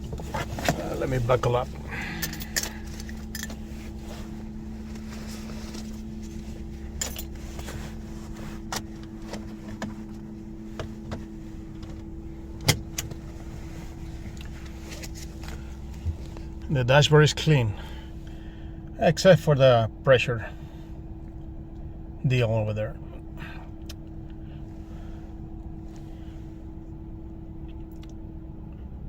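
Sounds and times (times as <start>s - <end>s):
seat belt rattles and clicks: 0.0s - 16.7s
low hum inside vehicle cab: 0.0s - 29.0s.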